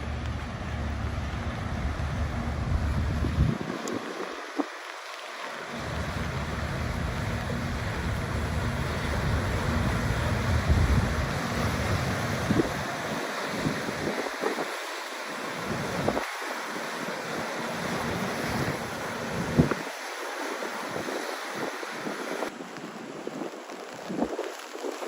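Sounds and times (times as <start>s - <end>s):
wind buffeting microphone: 0.0s - 4.9s, 5.7s - 16.7s, 17.4s - 25.0s
rain falling: 0.0s - 25.0s.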